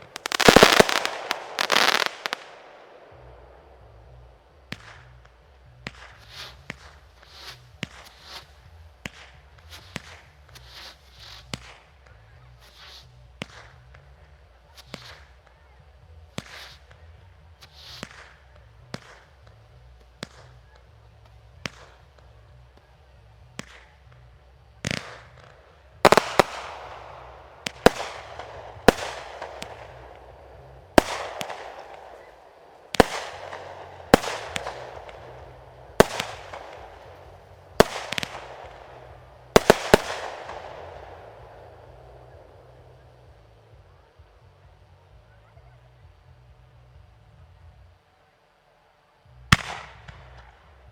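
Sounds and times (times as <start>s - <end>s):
fireworks bangs with crackling fizz: 0.0s - 4.0s, 4.6s - 15.5s, 16.3s - 17.0s, 17.6s - 23.0s, 23.6s - 24.2s, 24.8s - 43.4s, 49.5s - 50.6s.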